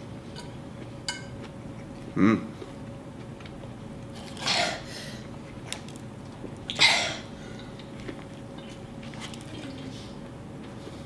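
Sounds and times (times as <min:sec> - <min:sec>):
person coughing: 0:04.4 - 0:04.9, 0:06.8 - 0:07.3.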